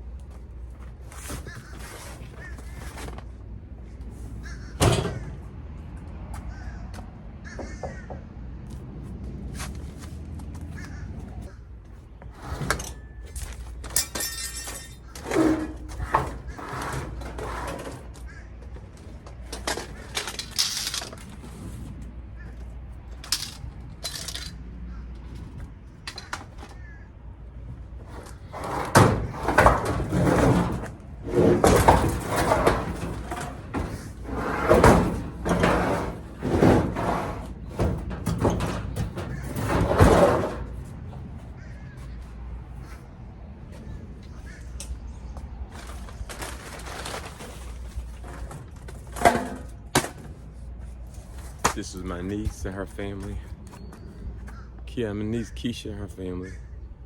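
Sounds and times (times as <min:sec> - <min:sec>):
loud clattering: 0:28.3 - 0:41.2.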